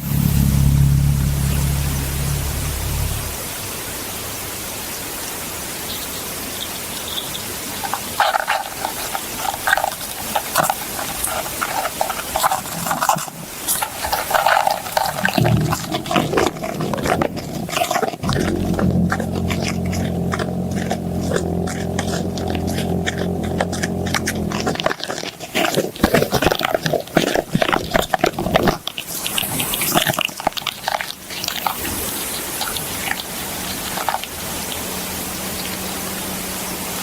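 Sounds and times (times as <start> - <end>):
rapid pulsing hums: 0.0 - 4.5, 14.0 - 27.4
steady low-pitched hum: 0.0 - 4.6, 15.4 - 25.4
steady hiss: 0.0 - 26.2.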